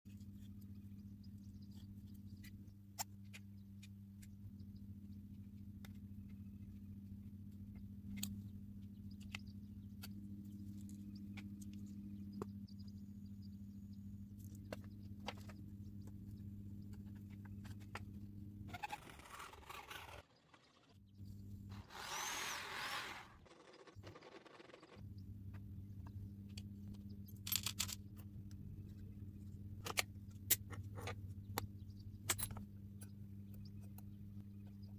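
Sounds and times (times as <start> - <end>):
low electrical hum: 0.1 - 34.9
harsh hissing grinding noise: 21.7 - 24.3.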